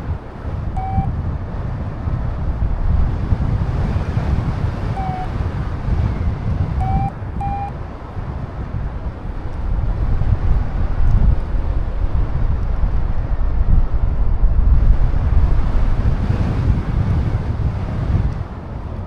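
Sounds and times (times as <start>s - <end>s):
wind buffeting microphone: 0.0s - 19.0s
variometer beeps: 0.7s - 1.2s, 4.9s - 5.4s, 6.8s - 7.7s.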